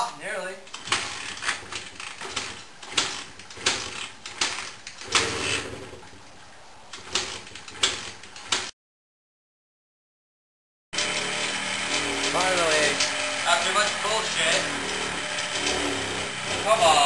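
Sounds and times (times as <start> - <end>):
motorcycle kickstarter clanking: 0.8 - 6.1.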